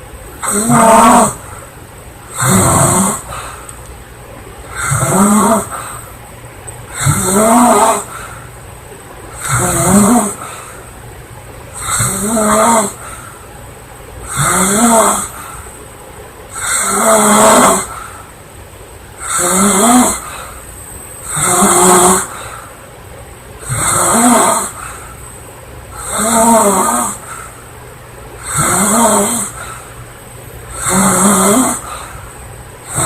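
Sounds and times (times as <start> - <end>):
woman snoring loudly: 0.4 - 1.6, 2.3 - 3.5, 4.7 - 5.9, 6.9 - 8.3, 9.4 - 10.7, 11.8 - 13.2, 14.2 - 15.6, 16.6 - 18.1, 19.2 - 20.5, 21.2 - 22.5, 23.6 - 25.0, 26.0 - 27.4, 28.4 - 29.8, 30.7 - 32.1
quiet breathing: 2.4 - 4.0, 4.6 - 7.3, 7.9 - 14.3, 15.1 - 16.9, 17.8 - 18.4, 19.2 - 21.6, 22.2 - 23.0, 24.6 - 33.0.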